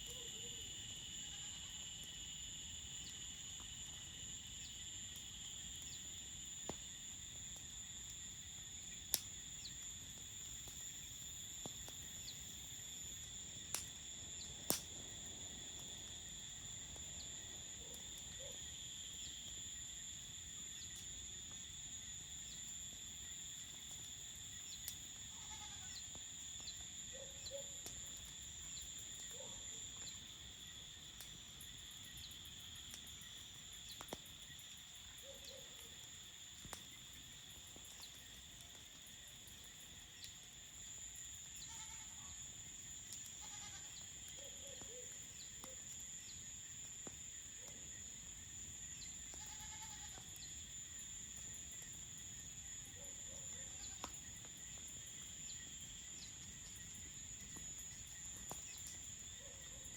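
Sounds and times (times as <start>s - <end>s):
crickets chirring: 0.0s - 59.9s
campfire crackling: 1.8s - 25.3s, 26.0s - 27.1s, 27.7s - 41.6s, 42.4s - 49.4s, 50.2s - 59.4s.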